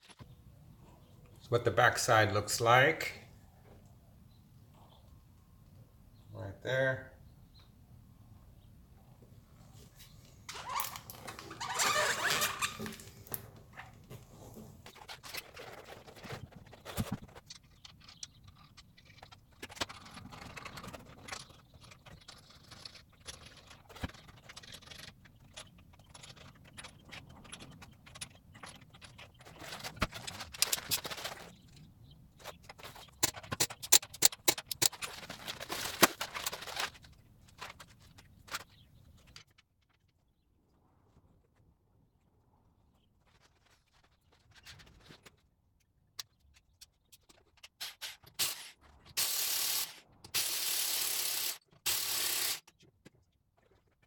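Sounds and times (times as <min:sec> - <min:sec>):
sharp clicks: 0:33.0 - 0:35.2.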